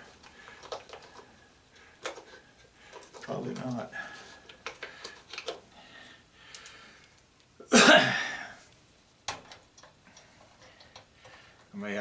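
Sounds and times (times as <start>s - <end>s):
man coughing: 7.6s - 8.6s.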